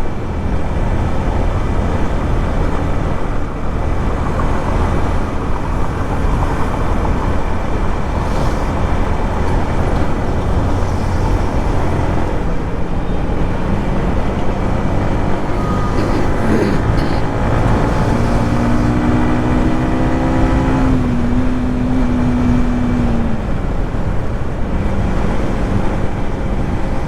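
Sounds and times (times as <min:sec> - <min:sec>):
wind and road noise: 0:00.0 - 0:27.0
motorcycle engine cruising: 0:01.1 - 0:23.6.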